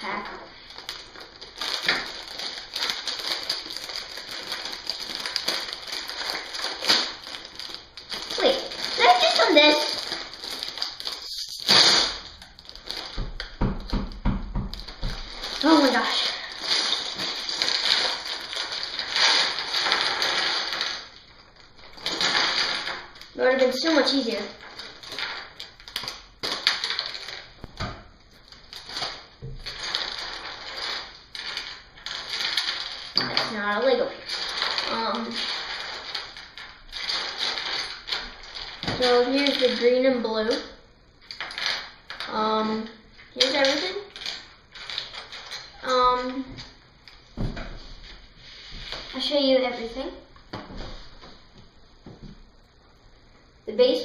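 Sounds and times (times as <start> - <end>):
rustling: 0.0 - 14.0, 14.7 - 39.8.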